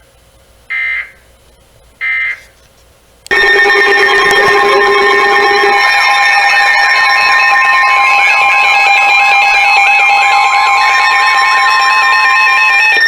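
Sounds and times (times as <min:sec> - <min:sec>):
warbling electronic chirp: 0:03.3 - 0:08.6
steady electronic alert tones: 0:03.3 - 0:12.4.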